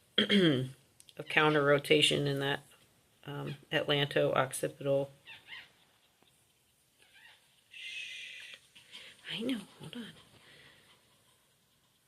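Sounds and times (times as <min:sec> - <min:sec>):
puppy squealing: 0:05.2 - 0:06.3, 0:07.0 - 0:07.6.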